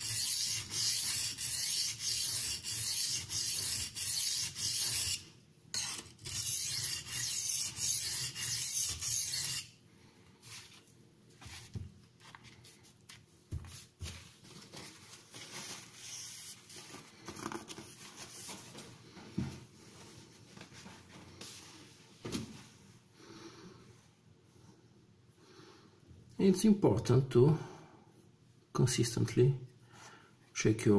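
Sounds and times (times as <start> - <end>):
knife scraping on oilstone: 0.0 - 5.2, 5.8 - 9.7.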